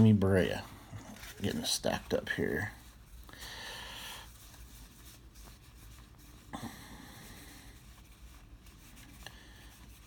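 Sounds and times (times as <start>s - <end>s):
cards rustling against each other: 0.0s - 6.5s.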